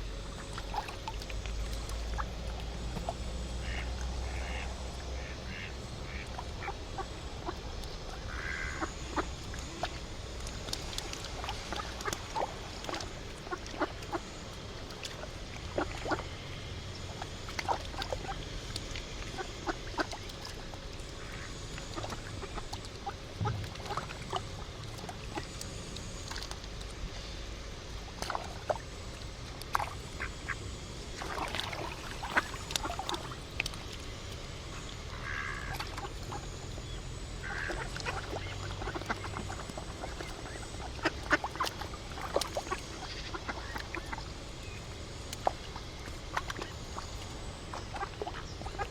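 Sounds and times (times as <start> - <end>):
low background rumble: 0.0 - 48.9
ducks quacking: 3.5 - 7.6, 8.2 - 10.0, 34.7 - 36.6, 37.4 - 44.2, 47.7 - 48.9.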